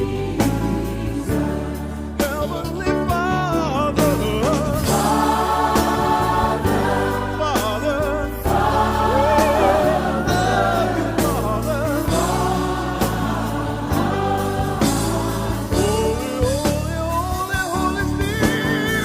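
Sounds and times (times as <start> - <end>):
choir singing gospel song: 0.0 - 19.0
sustained instrumental backing: 0.0 - 19.0.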